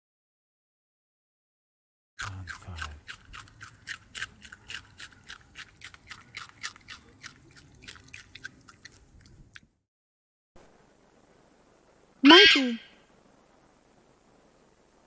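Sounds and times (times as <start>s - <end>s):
rabbit chewing food: 2.2s - 9.7s.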